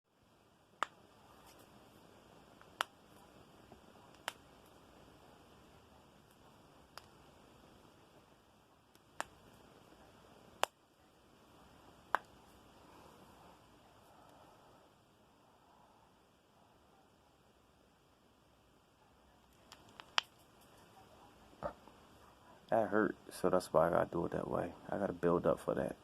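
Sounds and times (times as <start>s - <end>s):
knuckles cracking: 4.1s - 4.4s, 19.6s - 20.8s.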